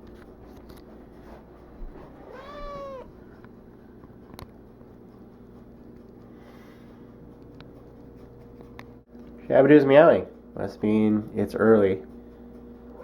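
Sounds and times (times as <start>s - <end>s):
cat meowing: 2.2s - 3.1s.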